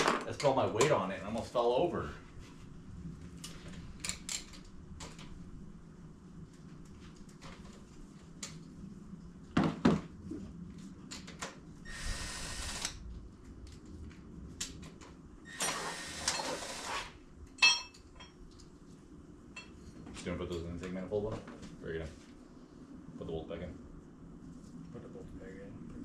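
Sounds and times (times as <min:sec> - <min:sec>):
metal clink ringing: 0:17.6 - 0:18.4.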